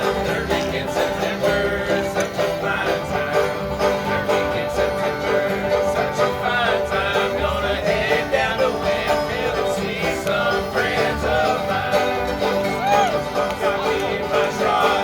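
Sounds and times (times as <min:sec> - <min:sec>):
banjo picking: 0:00.0 - 0:15.0
bluegrass band playing: 0:00.0 - 0:15.0.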